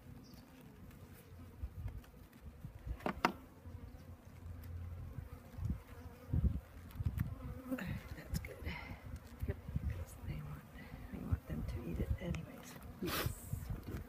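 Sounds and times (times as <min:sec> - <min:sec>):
bees buzzing: 0:02.9 - 0:13.7.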